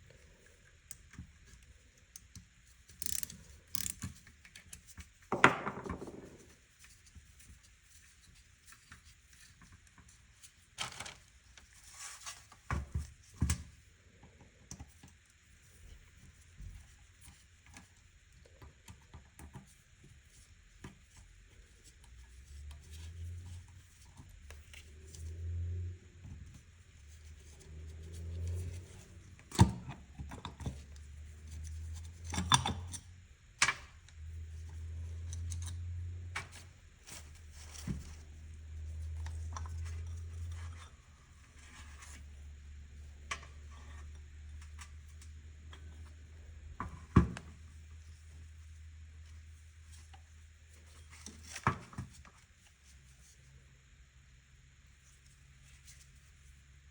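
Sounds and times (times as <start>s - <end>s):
tools and metal parts handled: 2.9s - 5.0s.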